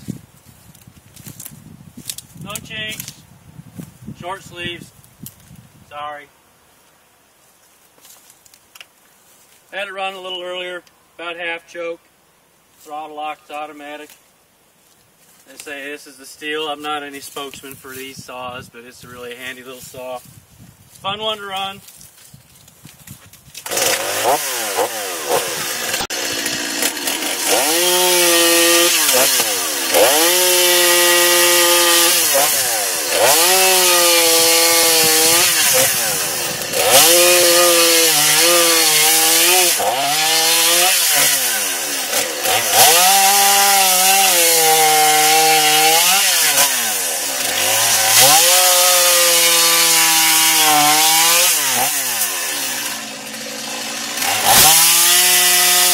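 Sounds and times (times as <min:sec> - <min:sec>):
chainsaw revving and idling: 0:23.6 - 0:55.9.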